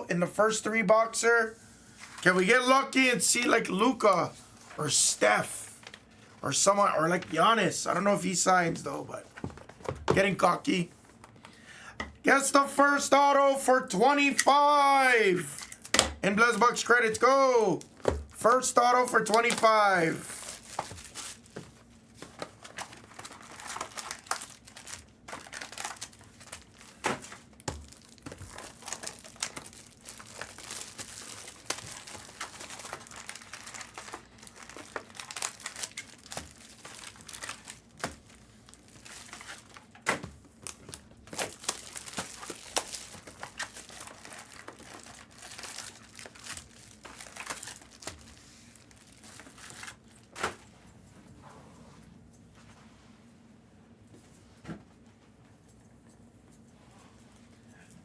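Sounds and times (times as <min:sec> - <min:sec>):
card pack wrappers crinkling and tearing: 0:14.2 - 0:50.5.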